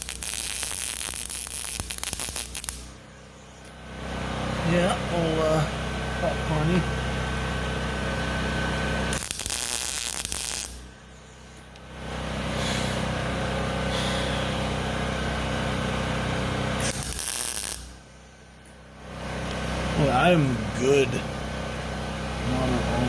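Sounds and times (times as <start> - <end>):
welding arc bursts: 0.0 - 3.0, 8.2 - 11.0, 11.9 - 18.0
steady hum: 0.0 - 23.0.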